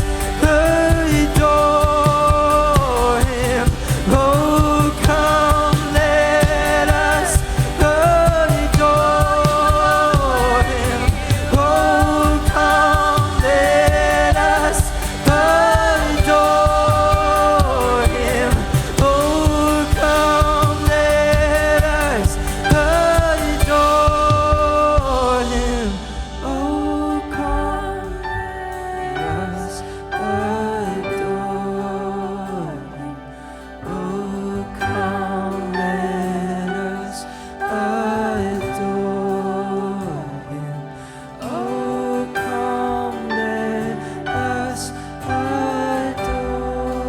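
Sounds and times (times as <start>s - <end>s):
band with steady beat: 0.0s - 27.5s
voices singing held notes: 0.0s - 47.0s.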